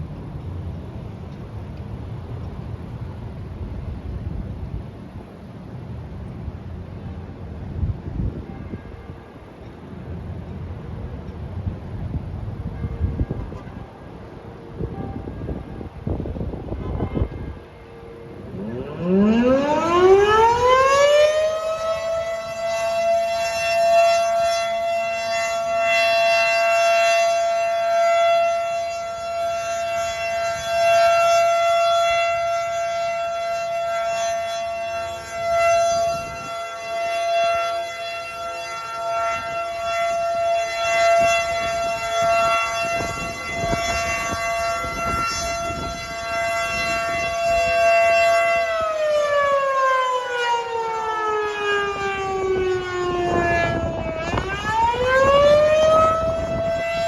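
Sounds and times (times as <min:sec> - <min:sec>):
warning siren winding up: 0:18.5 - 0:57.0.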